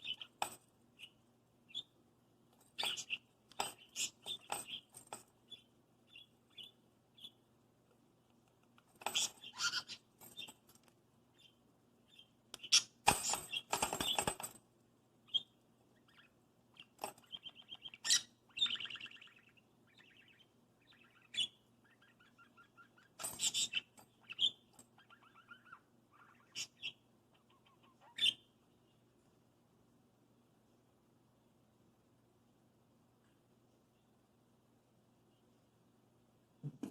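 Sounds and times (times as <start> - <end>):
budgerigar chattering and chirping: 9.2 - 10.0, 15.3 - 28.5.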